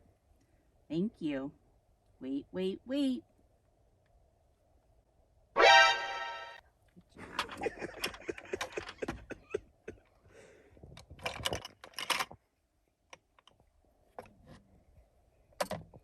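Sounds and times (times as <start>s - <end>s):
light sharp clicks and clatters: 10.8s - 12.4s.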